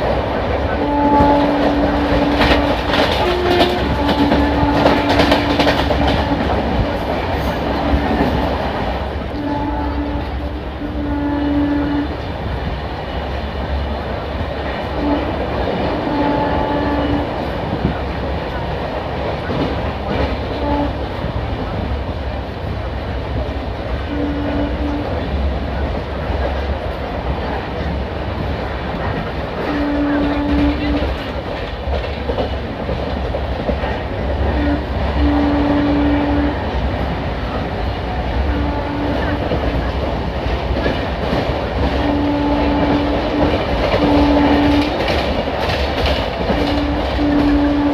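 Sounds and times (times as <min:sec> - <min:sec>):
train rumbling on track: 0:00.0 - 0:47.9
train horn: 0:00.6 - 0:08.3, 0:09.2 - 0:12.3, 0:14.8 - 0:17.8, 0:19.5 - 0:21.2, 0:24.0 - 0:25.4, 0:29.6 - 0:31.3, 0:34.2 - 0:40.0, 0:41.8 - 0:45.3, 0:46.4 - 0:47.9.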